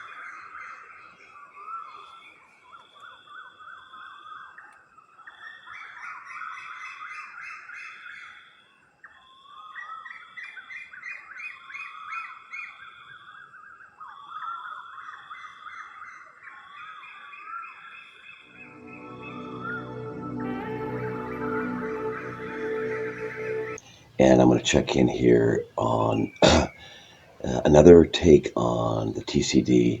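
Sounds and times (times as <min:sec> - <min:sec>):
rising animal chirps: 0:18.5 - 0:24.2
high pulsing whirring call: 0:18.5 - 0:27.7.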